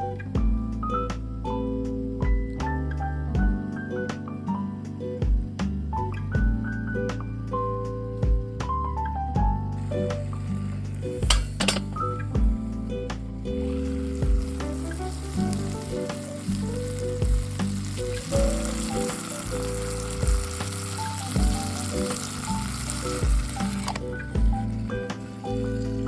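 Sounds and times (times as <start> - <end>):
background music with beat: 0.0 - 26.0
food sizzling in a pan: 9.8 - 12.3, 12.9 - 26.0.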